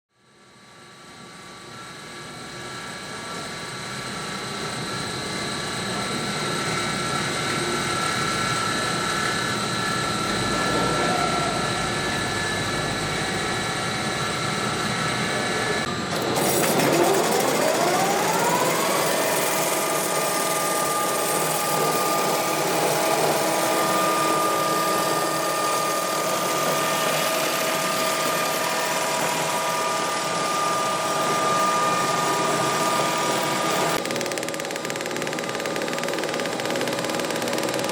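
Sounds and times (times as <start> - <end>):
machinery motor whine: 4.6 - 37.9
motor whine rising in pitch: 6.6 - 37.0.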